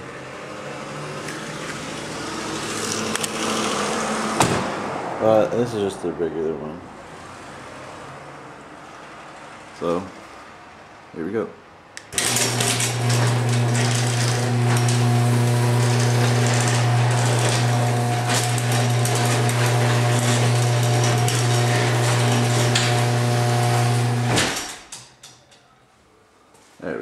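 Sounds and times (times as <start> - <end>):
garage door opener motor hum: 12.0 - 25.1
garage door clattering: 12.1 - 25.5.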